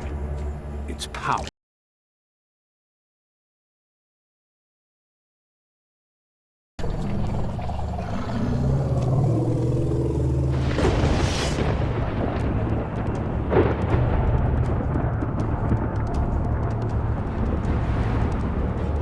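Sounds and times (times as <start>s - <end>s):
background music with low drone: 0.0s - 1.5s, 6.8s - 19.0s.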